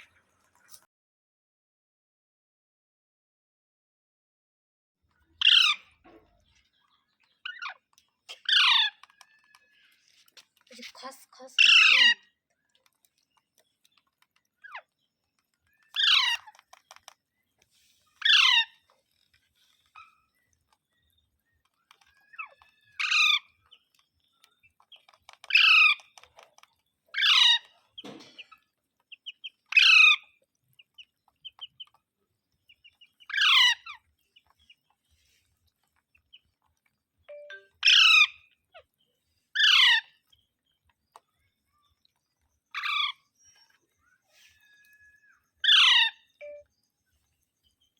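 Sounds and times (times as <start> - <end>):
faint chirps and clicks: 5.1 - 47.9
parrot calling: 8.4 - 9.3, 11.6 - 12.2, 15.9 - 16.5, 18.2 - 18.8, 33.3 - 34.0, 37.3 - 38.5, 39.6 - 40.1, 44.6 - 46.6.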